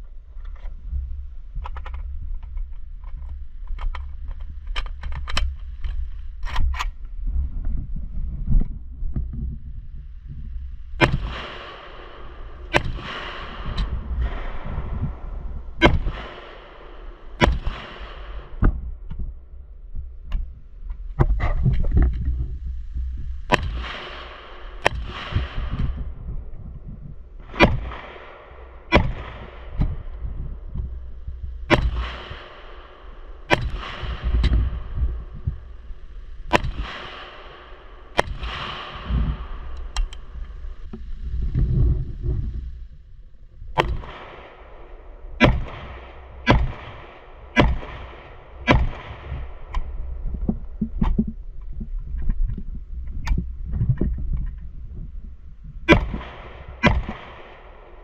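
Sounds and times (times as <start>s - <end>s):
wind rumble on microphone: 0.0s - 58.0s
rifle shots with echo: 11.0s - 19.1s, 23.4s - 26.3s, 27.4s - 40.8s, 43.7s - 50.3s, 55.9s - 58.0s.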